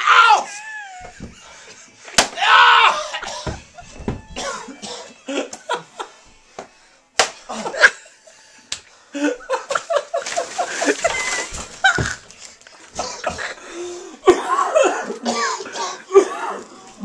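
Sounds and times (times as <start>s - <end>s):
person giggling: 0.5s - 1.7s, 9.2s - 12.2s.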